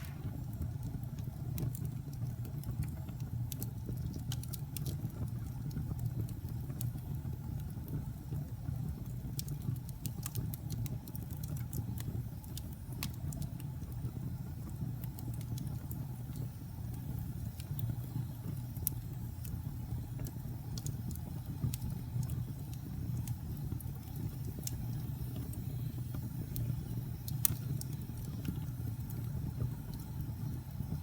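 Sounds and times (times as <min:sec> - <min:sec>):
fire roaring low: 0:00.0 - 0:01.7
wood fire crackling: 0:00.0 - 0:31.0.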